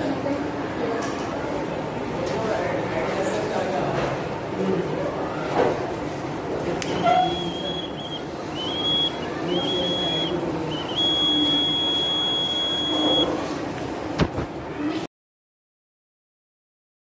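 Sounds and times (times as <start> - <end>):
fire alarm buzzer tone: 6.9 - 13.4.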